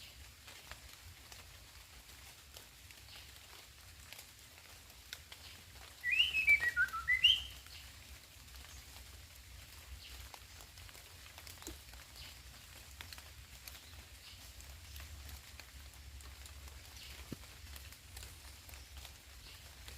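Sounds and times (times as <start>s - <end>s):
bird singing whistled phrase: 6.0s - 7.6s.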